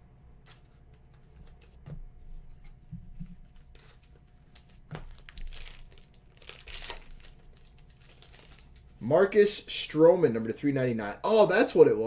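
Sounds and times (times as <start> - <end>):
wrapper being torn and crinkled: 3.7 - 8.9.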